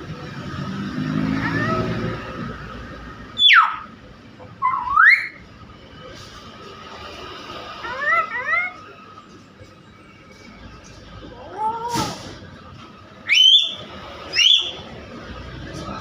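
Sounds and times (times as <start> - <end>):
myna calling: 7.8 - 8.9.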